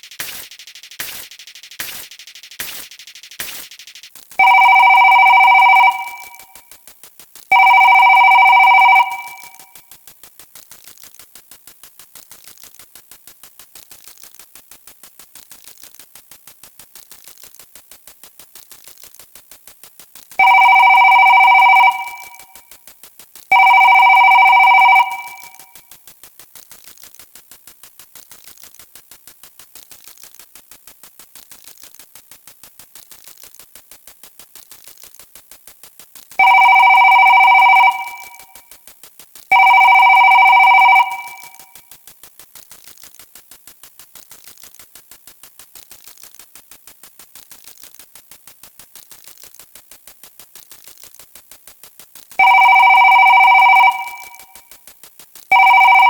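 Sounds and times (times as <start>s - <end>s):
rapid steady ticking: 0.0s - 6.6s
electronic telephone ringing: 4.4s - 6.6s, 7.5s - 9.7s, 20.4s - 22.6s, 23.5s - 25.7s, 36.4s - 38.6s, 39.5s - 41.8s, 52.4s - 54.6s, 55.5s - 56.0s.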